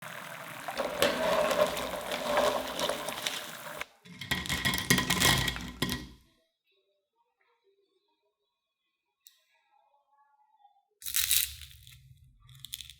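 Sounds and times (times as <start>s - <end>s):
kitchen clinks and taps: 0.2s - 6.2s.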